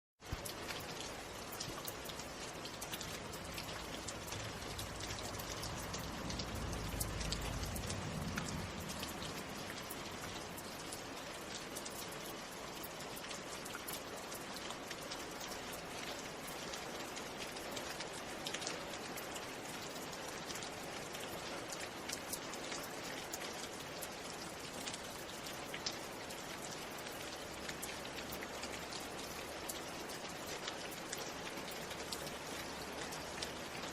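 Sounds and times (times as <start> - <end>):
raindrops ticking on a surface: 0.2 - 33.9
low rumble: 4.4 - 10.2.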